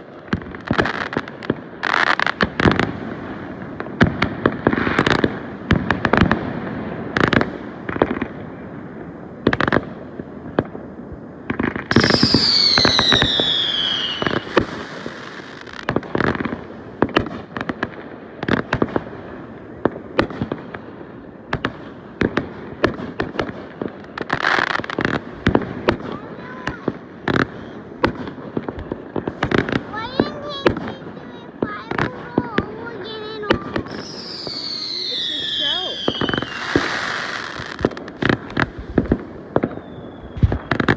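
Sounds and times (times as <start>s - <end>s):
fireworks bangs and crackling: 0.0s - 40.9s
whistling firework: 11.6s - 17.8s, 21.5s - 40.9s.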